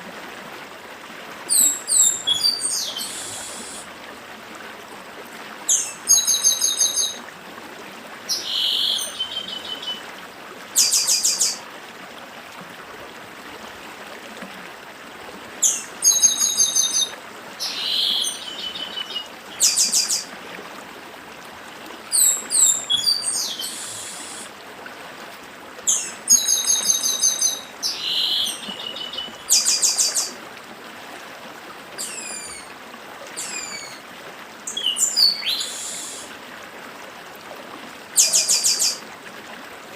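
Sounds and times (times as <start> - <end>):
stream running: 0.0 - 39.9
bird whistling and trilling: 1.5 - 3.8, 5.7 - 7.2, 15.6 - 20.2, 22.1 - 24.5, 25.9 - 30.3, 32.0 - 32.7, 33.4 - 34.0, 34.7 - 36.3.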